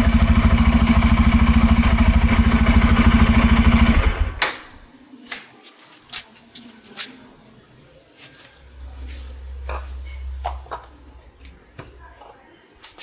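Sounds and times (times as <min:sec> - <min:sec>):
motorcycle engine running: 0:00.0 - 0:04.4
low hum: 0:08.6 - 0:11.8.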